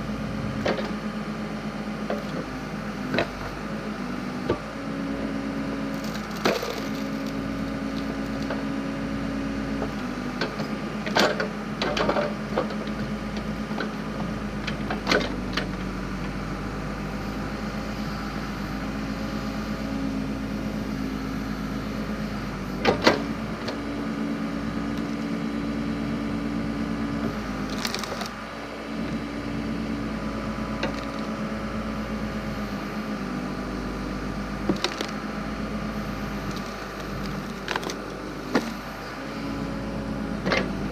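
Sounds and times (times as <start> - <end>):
backhoe engine running: 0.0 - 40.9
wood splitting cracks: 5.9 - 8.6, 27.7 - 28.4, 34.7 - 35.2, 36.4 - 38.8.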